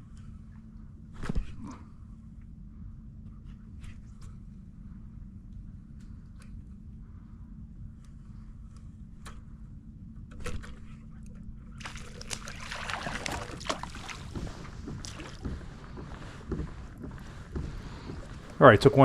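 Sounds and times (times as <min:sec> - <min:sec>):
steady low rumble: 0:00.0 - 0:19.0
water splashing around kayak: 0:11.8 - 0:15.8.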